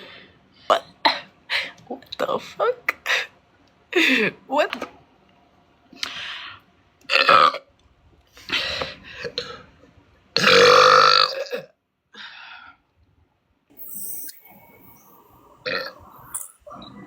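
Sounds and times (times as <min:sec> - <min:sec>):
loud burps: 0:07.1 - 0:07.6, 0:10.4 - 0:11.7, 0:14.7 - 0:17.0.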